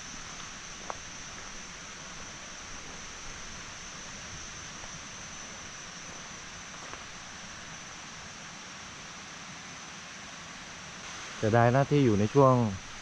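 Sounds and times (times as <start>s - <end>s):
thin high hiss: 10.3s - 13.0s.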